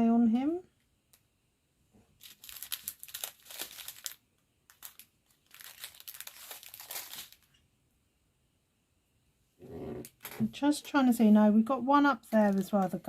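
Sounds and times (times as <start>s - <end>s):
plastic packaging crinkling: 2.1s - 7.6s, 12.2s - 13.0s.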